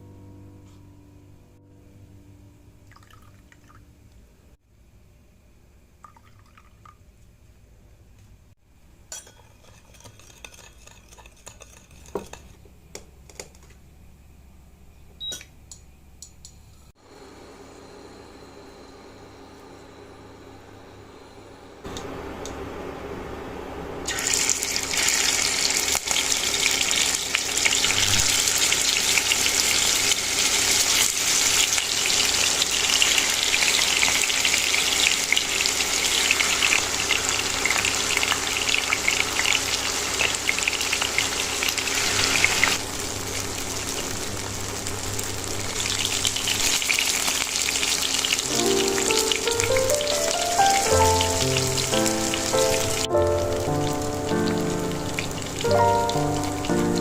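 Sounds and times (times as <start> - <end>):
food sizzling in hot oil: 24.1 - 57.0
soft background music: 48.5 - 57.0.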